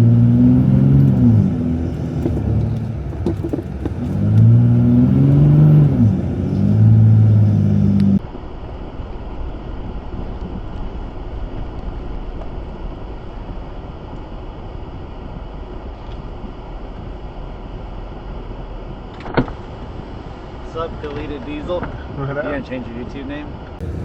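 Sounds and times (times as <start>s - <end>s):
engine revving: 0.0s - 8.2s, 23.8s - 24.0s
steady low engine rumble: 0.0s - 24.0s.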